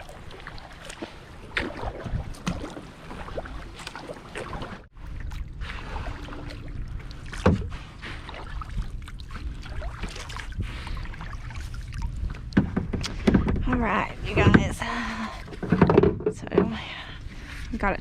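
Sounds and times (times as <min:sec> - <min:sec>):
paddle splashing in water: 0:00.0 - 0:17.7
low steady rumble: 0:04.9 - 0:18.0.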